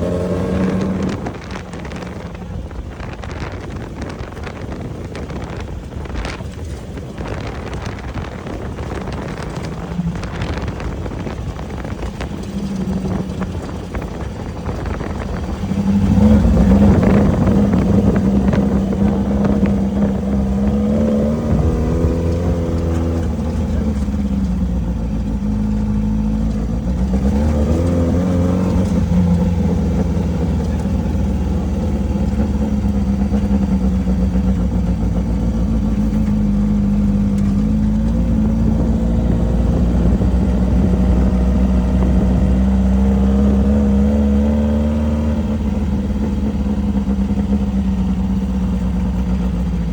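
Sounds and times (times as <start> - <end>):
off-road vehicle engine under throttle: 0.0 - 49.9.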